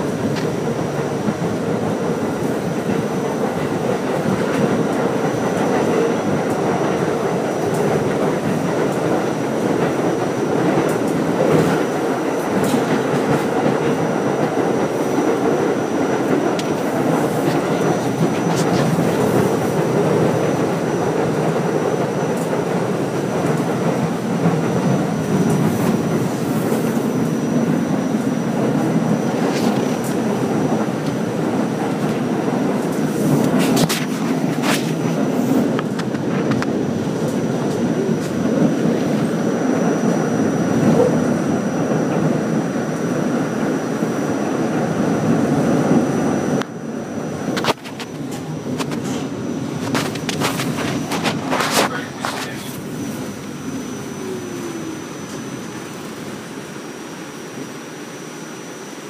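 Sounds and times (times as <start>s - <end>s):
subway wheels rumbling on rail: 0.0s - 59.0s
high-pitched whine: 34.3s - 59.0s.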